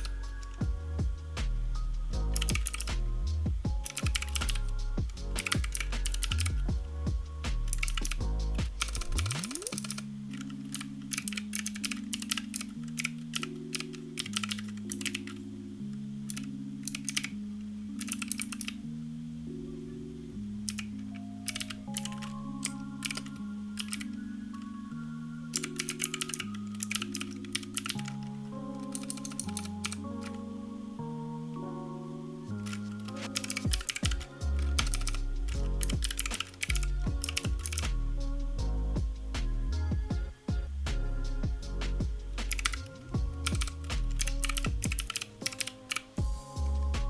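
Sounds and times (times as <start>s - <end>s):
background music: 0.0s - 47.0s
clicky mechanical keyboard typing: 3.7s - 4.6s, 25.6s - 28.2s, 32.6s - 35.2s, 35.8s - 38.0s, 42.5s - 46.2s.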